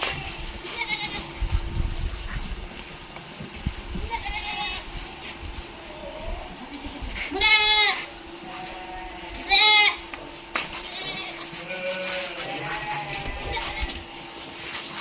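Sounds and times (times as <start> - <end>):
goats bleating: 0.0 - 1.4, 4.0 - 5.2, 6.0 - 14.2.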